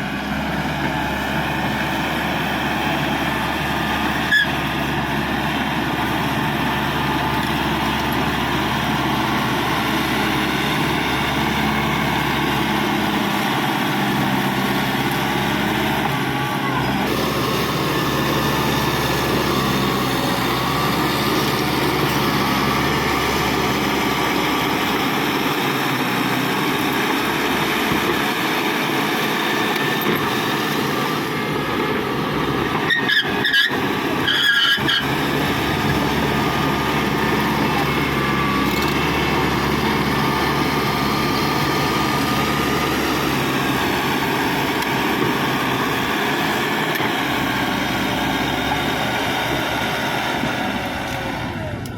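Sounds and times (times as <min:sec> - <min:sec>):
bulldozer diesel engine under load: 0:00.0 - 0:51.9
short squeals: 0:32.8 - 0:35.1.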